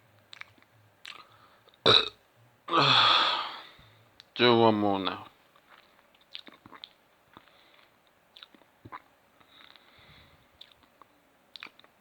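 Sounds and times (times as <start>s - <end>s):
mouth clicks and gulping: 5.7s - 9.9s, 10.6s - 12.0s.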